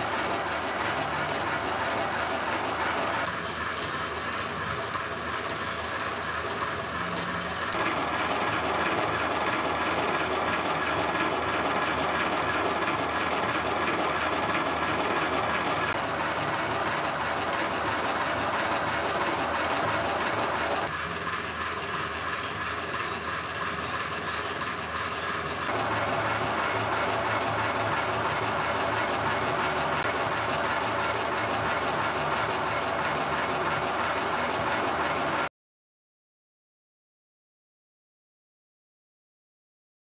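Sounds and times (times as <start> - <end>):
milling machine whining: 0.0 - 35.5.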